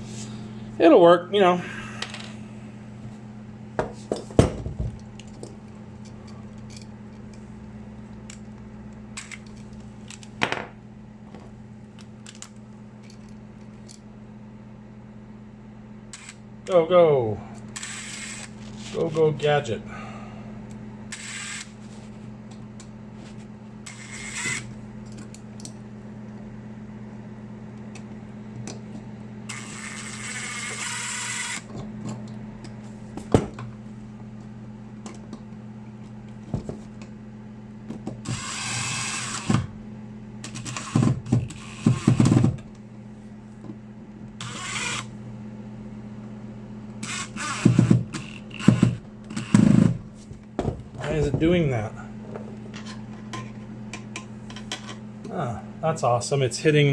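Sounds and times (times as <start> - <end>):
steady low hum: 0.0 - 56.9
tool scraping or whirring: 21.1 - 22.2, 23.3 - 24.8, 29.5 - 31.7, 44.4 - 45.1, 47.0 - 50.2.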